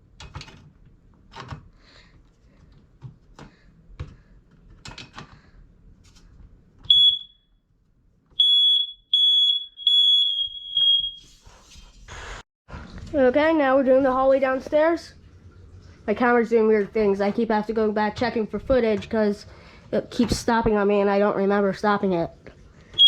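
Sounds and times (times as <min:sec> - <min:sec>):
smoke alarm beeping: 0:06.9 - 0:07.5, 0:08.4 - 0:11.4.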